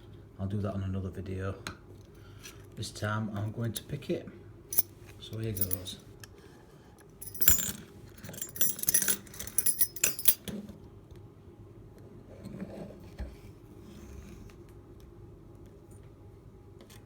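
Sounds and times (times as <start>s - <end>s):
lock picks clinking on padlock: 5.6s - 5.9s, 7.2s - 10.5s.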